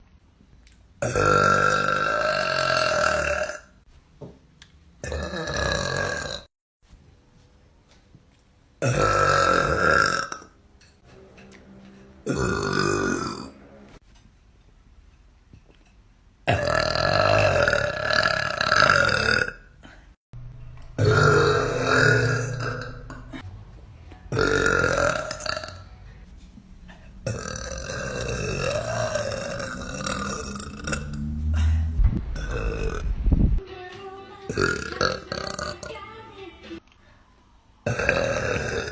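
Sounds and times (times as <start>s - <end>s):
girl burping loudly: 1.0s - 3.7s, 5.0s - 6.5s, 8.8s - 10.6s, 12.3s - 13.5s, 16.5s - 19.9s, 21.0s - 23.4s, 24.3s - 25.9s, 27.2s - 31.3s, 32.4s - 33.0s, 34.5s - 35.9s, 37.9s - 38.9s
girl burping: 21.0s - 23.4s, 34.5s - 35.9s.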